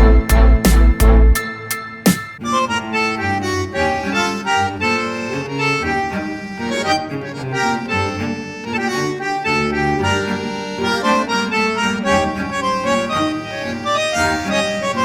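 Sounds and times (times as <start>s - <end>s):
bass line: 0.0s - 1.4s
accordion-like melody: 0.0s - 15.0s.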